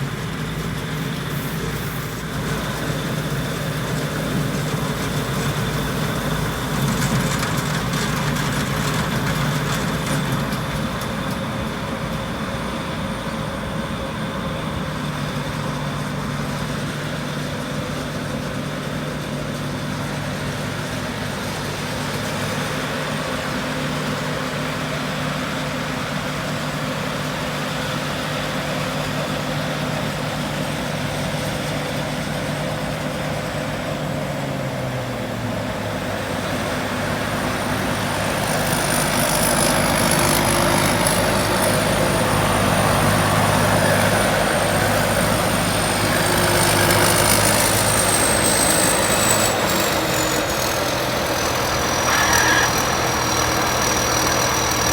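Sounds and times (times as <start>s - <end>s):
diesel engine running: 0.0s - 54.9s
high whine: 48.3s - 54.8s.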